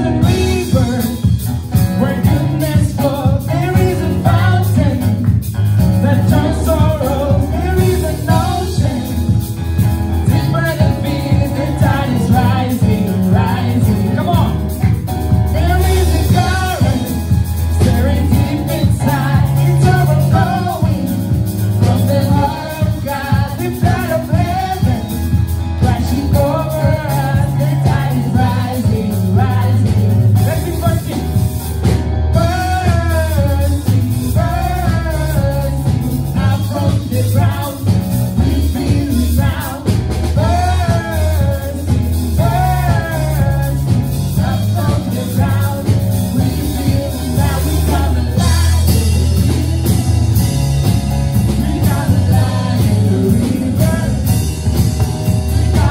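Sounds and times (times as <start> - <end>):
band with drums and bass: 0.0 - 55.9
person singing: 32.4 - 50.1, 51.4 - 54.8.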